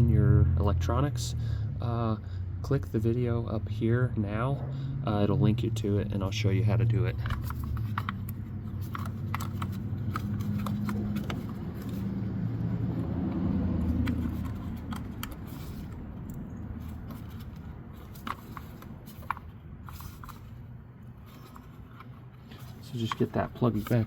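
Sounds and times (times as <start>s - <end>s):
vehicle passing by: 0.0s - 19.1s
plastic connectors clicking: 7.2s - 12.1s.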